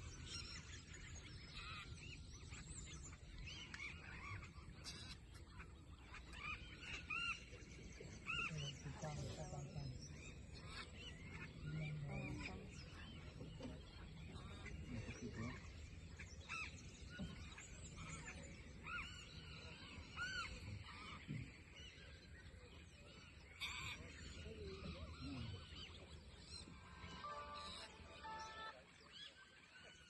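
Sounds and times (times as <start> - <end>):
birds honking: 26.6 - 29.0.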